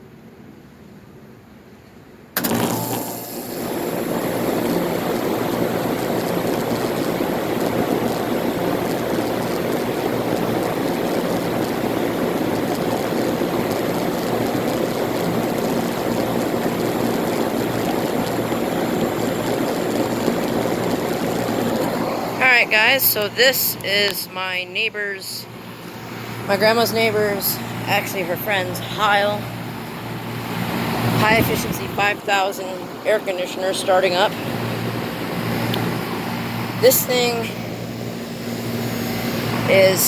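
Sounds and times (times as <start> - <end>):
compressor hum: 2.3 - 40.0
condenser fan rushing: 2.3 - 40.0.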